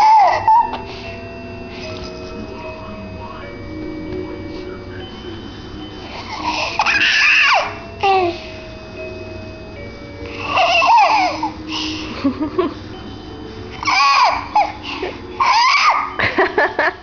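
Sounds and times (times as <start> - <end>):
baby squealing and babbling: 0.0 - 0.7, 6.3 - 8.3, 10.4 - 11.5, 13.8 - 14.8, 15.4 - 16.1
faint steady tones: 0.0 - 17.0.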